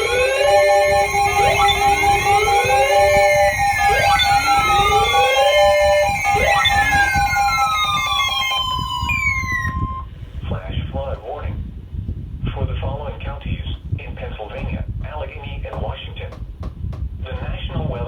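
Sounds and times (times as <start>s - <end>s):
electronic siren-like alert tones: 0.0s - 10.1s.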